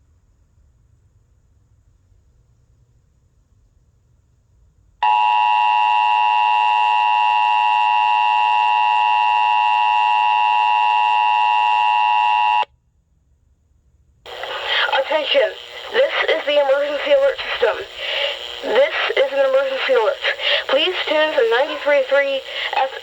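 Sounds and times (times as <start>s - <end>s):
loud steady dual tone: 5.0s - 12.7s, 14.3s - 23.0s.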